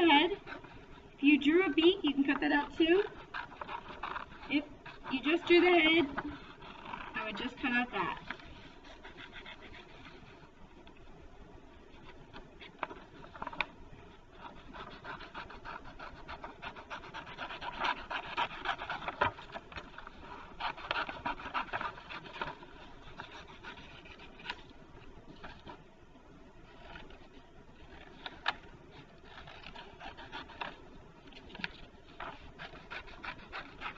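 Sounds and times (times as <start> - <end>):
paper rustling: 11.9 - 25.8, 26.6 - 33.9
scissors snipping paper: 27.8 - 30.8.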